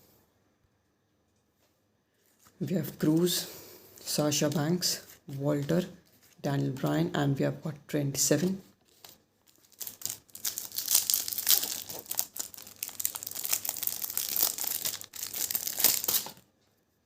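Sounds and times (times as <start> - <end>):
plastic wrapper crinkling: 8.8 - 16.5.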